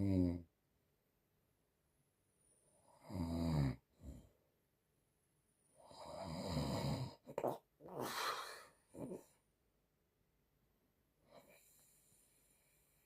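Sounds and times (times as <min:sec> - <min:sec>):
woman snoring: 0:05.8 - 0:09.3.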